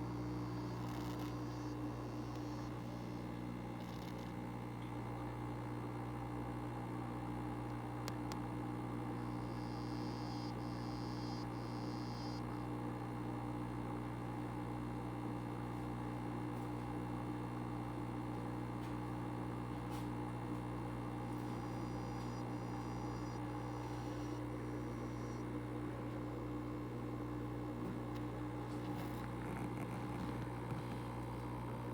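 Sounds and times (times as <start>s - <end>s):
low humming buzz of frog: 0.0s - 31.9s
faint higher buzz: 21.3s - 27.7s.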